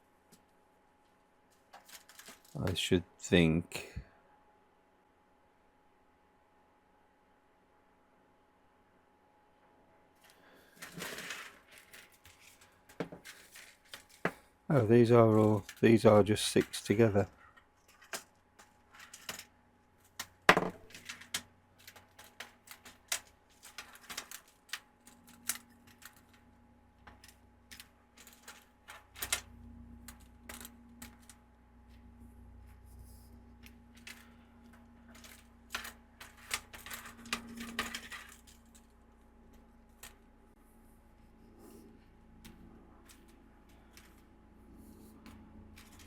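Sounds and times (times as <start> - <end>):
faint low hum: 0.0 - 46.0
plastic light tubes clattering: 1.6 - 2.8, 10.6 - 32.0, 33.0 - 40.3, 42.4 - 44.4, 45.0 - 46.0.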